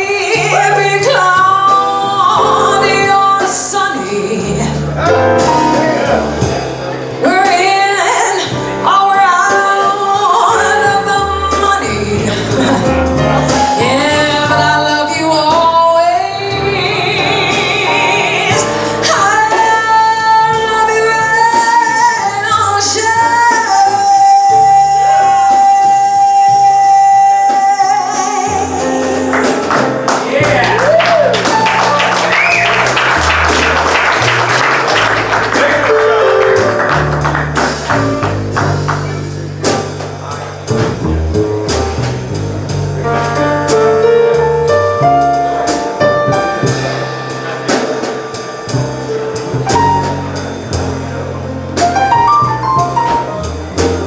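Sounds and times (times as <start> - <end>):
woman singing jazz: 0.0 - 5.8, 6.4 - 31.7, 42.6 - 54.0
bass notes: 0.0 - 54.0
drum kit with cymbals: 0.0 - 54.0
piano chords and runs: 0.0 - 54.0.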